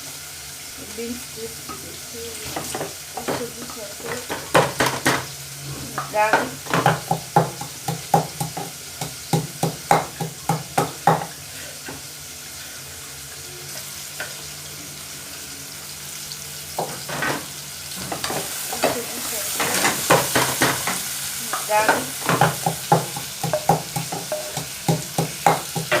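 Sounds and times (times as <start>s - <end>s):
beans sizzling in a pan: 0.0s - 26.0s
spoon stirring and scraping pan: 1.7s - 12.8s, 16.8s - 26.0s.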